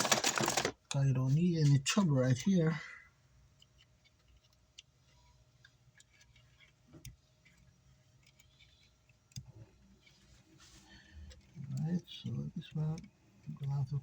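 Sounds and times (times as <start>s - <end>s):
small parts clicking on workbench: 0.0s - 0.8s.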